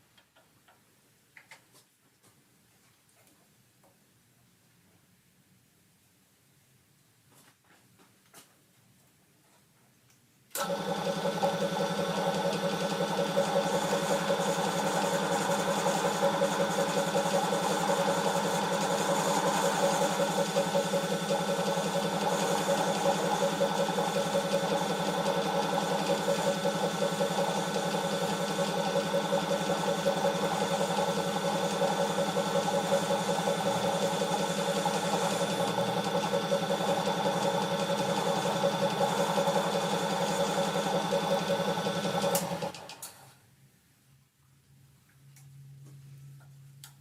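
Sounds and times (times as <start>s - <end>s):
power tool motor running: 10.6s - 42.9s.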